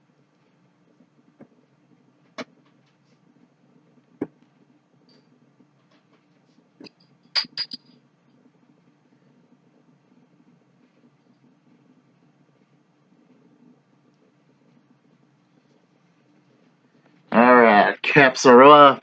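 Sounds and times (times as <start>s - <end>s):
bottle caps pried off: 7.4s - 7.8s.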